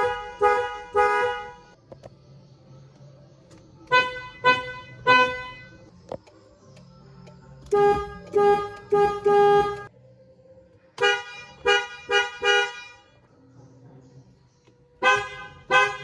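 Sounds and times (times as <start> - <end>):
car horn honking: 0.0 - 1.8, 3.8 - 5.8, 7.7 - 9.9, 11.0 - 13.1, 15.0 - 16.0.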